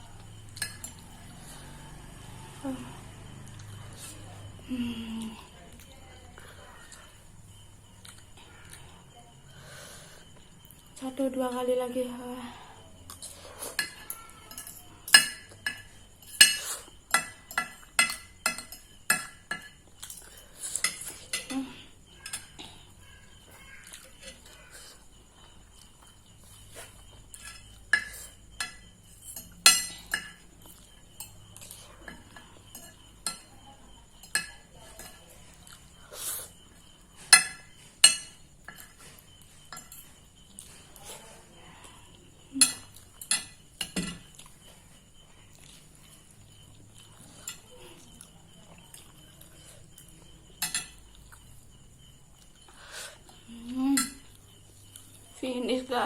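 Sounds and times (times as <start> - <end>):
cutlery scraping a plate: 0.5 - 1.1, 13.2 - 21.5, 26.4 - 33.5, 34.2 - 36.3, 37.2 - 41.4, 42.6 - 44.6, 50.6 - 51.1.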